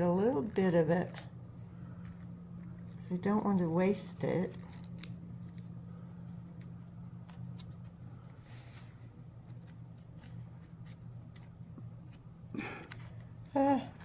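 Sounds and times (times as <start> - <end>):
steady low hum: 0.0 - 14.0
paper rustling and ticking: 2.0 - 8.4.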